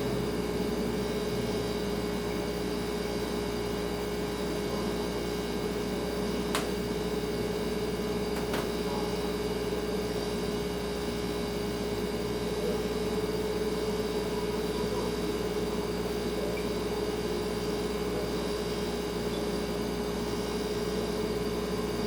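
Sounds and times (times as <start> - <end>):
refrigerator humming: 0.0 - 22.0.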